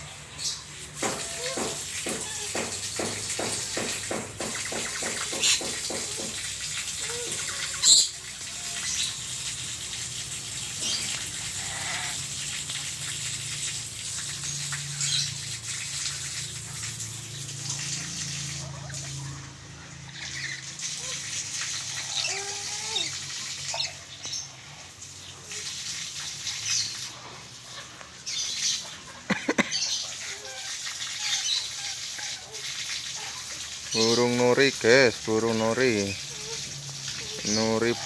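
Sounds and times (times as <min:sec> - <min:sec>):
birds making high calls: 0:00.0 - 0:09.7, 0:10.6 - 0:12.6, 0:27.7 - 0:32.6.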